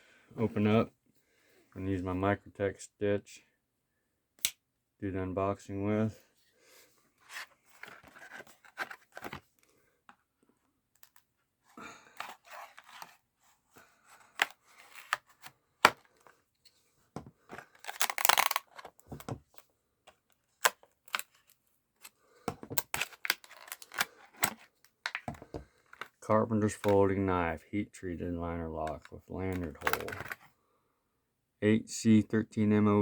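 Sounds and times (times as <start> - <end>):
packaging tearing rasp: 17.6 - 18.9, 22.8 - 24.6
knife cutting packaging: 17.6 - 19.0, 22.8 - 25.2
packaging crinkling: 17.6 - 19.1, 22.7 - 25.2.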